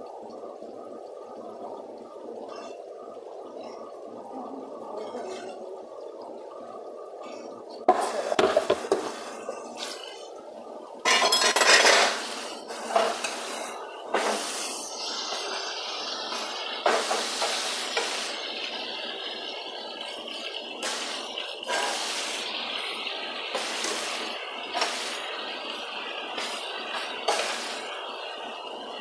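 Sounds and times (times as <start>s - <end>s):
metal spoon scraping a pot: 11.1s - 12.2s
food sizzling in a pot: 11.1s - 29.0s.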